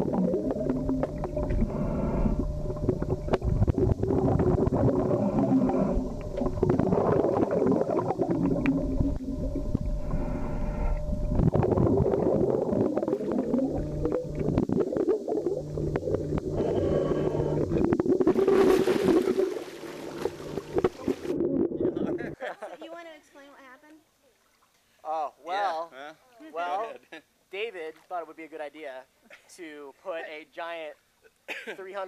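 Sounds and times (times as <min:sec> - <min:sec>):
underwater bubbles and churning water: 0:00.0 - 0:22.2.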